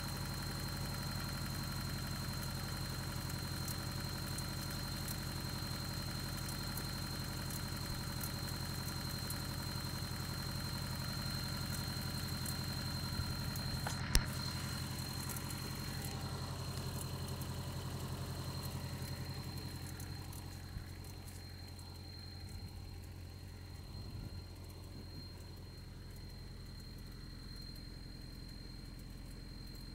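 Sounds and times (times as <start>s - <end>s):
engine idling: 0.0s - 29.9s
sharp click: 13.7s - 14.5s.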